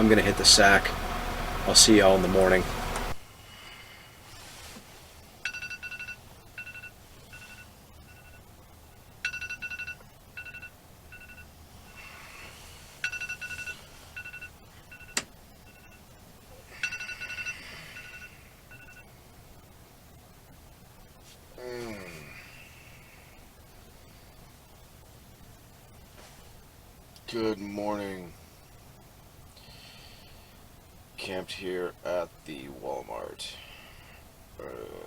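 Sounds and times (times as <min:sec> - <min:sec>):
phone alarm beeping: 0:05.4 - 0:08.6, 0:09.2 - 0:12.0, 0:13.0 - 0:16.1, 0:16.8 - 0:19.2.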